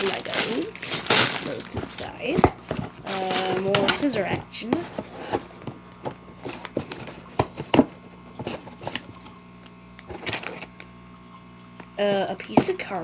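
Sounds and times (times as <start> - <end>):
scissors snipping packaging: 0.0 - 2.5, 3.1 - 4.2
low electrical hum: 0.0 - 13.0.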